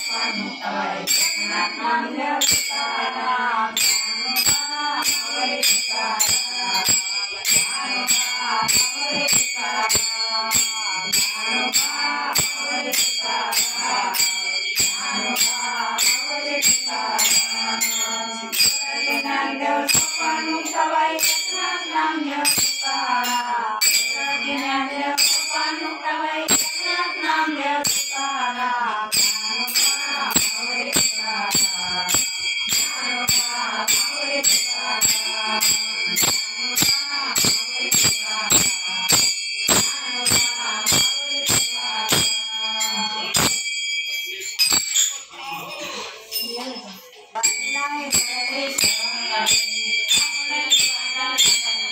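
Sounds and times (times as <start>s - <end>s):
elderly woman singing: 0.0s - 43.4s, 47.4s - 51.8s
jingling metal hand percussion: 0.0s - 51.9s.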